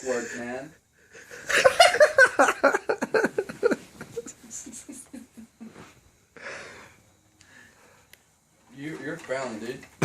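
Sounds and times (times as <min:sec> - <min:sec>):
man laughing: 0:01.2 - 0:05.8
long breath out: 0:06.4 - 0:08.1.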